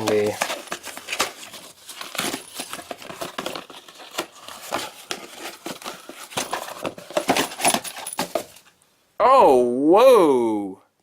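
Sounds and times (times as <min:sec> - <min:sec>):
packaging crinkling: 0:00.0 - 0:08.7.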